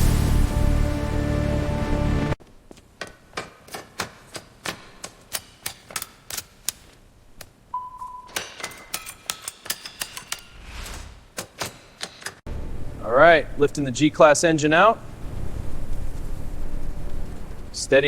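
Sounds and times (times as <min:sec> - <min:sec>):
short steady beep: 0:07.8 - 0:08.4.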